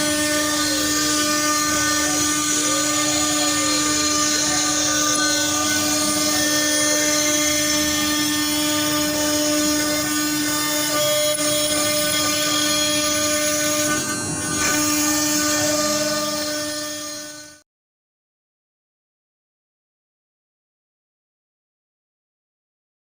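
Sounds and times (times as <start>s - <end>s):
gliding motor tones: 0.0s - 17.6s
machine noise: 0.0s - 17.6s
router spindle whine: 0.0s - 17.6s.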